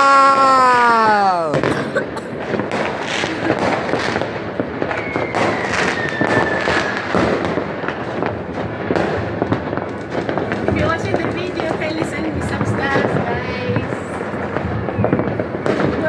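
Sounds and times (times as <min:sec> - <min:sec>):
fireworks bangs and crackles: 0:00.0 - 0:16.0
falling firework whistle: 0:02.8 - 0:07.5, 0:14.6 - 0:15.8.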